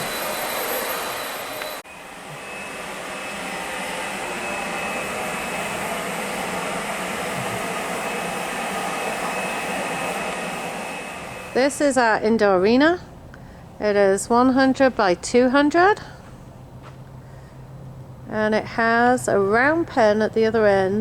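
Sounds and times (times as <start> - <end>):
leaf blower running: 1.8 - 12.2.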